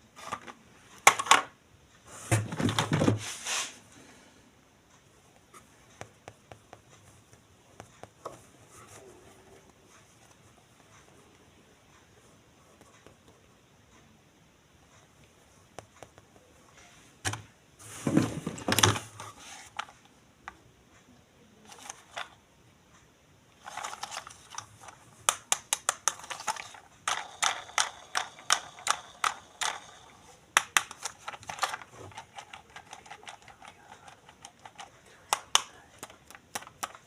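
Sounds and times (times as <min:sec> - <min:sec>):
packaging rustling crinkle: 0:23.6 - 0:25.1, 0:26.0 - 0:30.1, 0:30.8 - 0:37.0.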